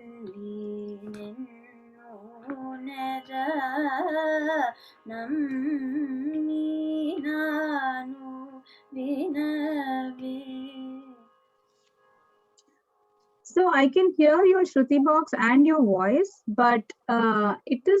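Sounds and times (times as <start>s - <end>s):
person singing with ornaments: 0.0s - 11.2s
shruti box drone: 0.0s - 14.7s.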